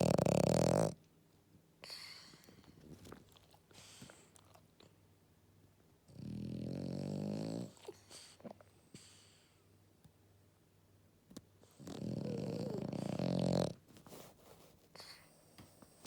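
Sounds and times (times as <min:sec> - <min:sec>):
dog snoring: 0:00.0 - 0:01.0, 0:06.1 - 0:09.4, 0:11.6 - 0:13.8
dog breathing softly: 0:01.8 - 0:04.6, 0:07.6 - 0:09.8.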